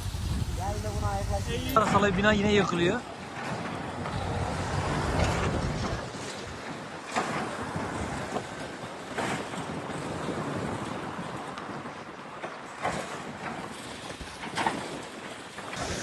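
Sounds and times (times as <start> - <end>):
building collapse rumble: 0.0 - 6.2.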